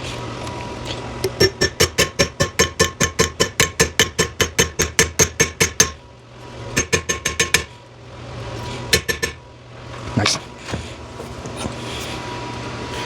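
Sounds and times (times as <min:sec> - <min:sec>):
hammer striking metal: 0:01.3 - 0:06.0, 0:06.8 - 0:07.8, 0:08.9 - 0:09.4.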